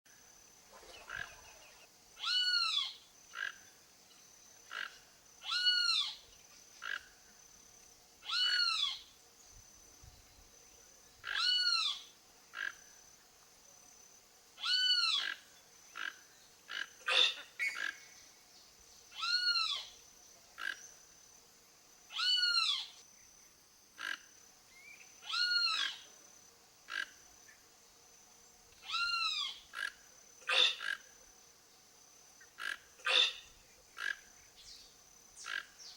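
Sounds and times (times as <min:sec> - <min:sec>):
toucan croaking call: 0:00.8 - 0:03.7, 0:04.6 - 0:06.2, 0:08.2 - 0:09.1, 0:11.2 - 0:12.8, 0:14.6 - 0:18.1, 0:24.0 - 0:24.3, 0:25.2 - 0:26.0, 0:26.9 - 0:27.2, 0:28.8 - 0:31.1, 0:32.4 - 0:34.3, 0:35.4 - 0:35.9.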